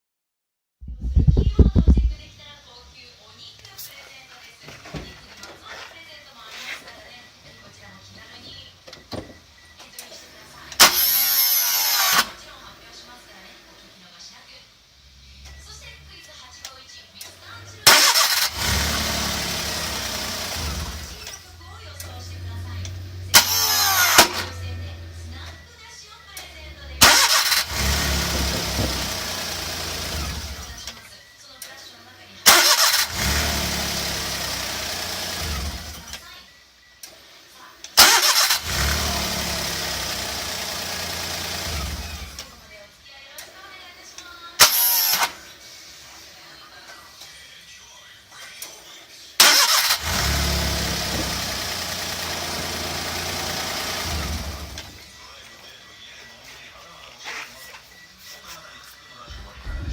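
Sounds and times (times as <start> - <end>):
harsh starter motor noise: 10.8 - 12.4, 17.8 - 22.1, 22.8 - 25.5, 27.0 - 31.0, 32.5 - 36.2, 38.0 - 42.6, 44.6 - 45.4, 49.4 - 55.0
engine idling: 17.8 - 25.6, 26.7 - 31.0, 32.5 - 36.2, 38.0 - 42.6, 49.4 - 55.1
low mechanical running: 26.5 - 30.9, 50.0 - 55.0.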